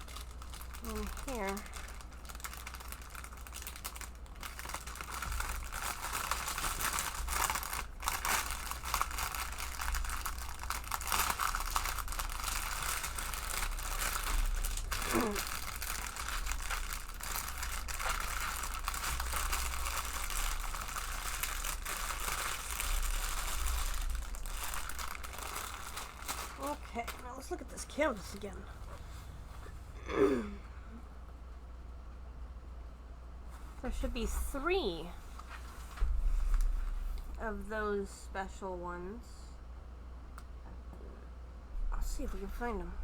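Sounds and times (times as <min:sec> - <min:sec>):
plastic packaging crinkling: 0:00.0 - 0:29.1.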